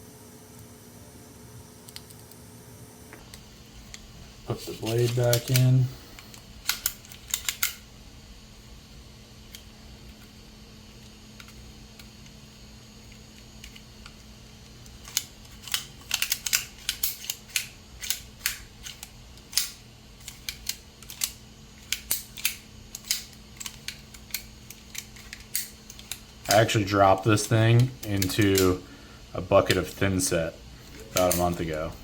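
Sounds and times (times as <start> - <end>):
utility knife mechanism clicking: 5.0 - 7.8, 15.0 - 26.6, 27.8 - 28.8, 31.0 - 31.7.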